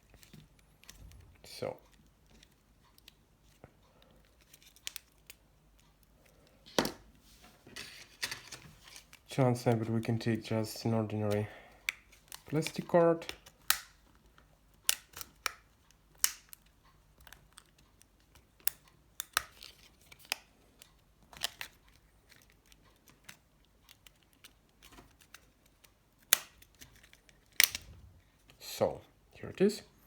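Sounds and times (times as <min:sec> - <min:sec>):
plastic clips clicking and snapping: 0:11.2 - 0:27.9.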